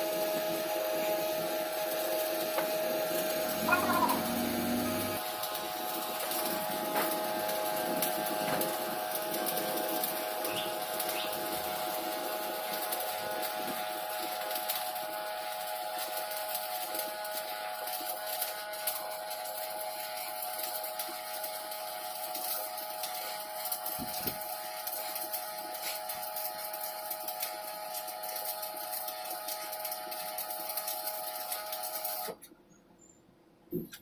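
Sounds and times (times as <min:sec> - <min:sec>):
welding arc crackling: 0:00.0 - 0:32.4
steady hum: 0:03.0 - 0:08.1.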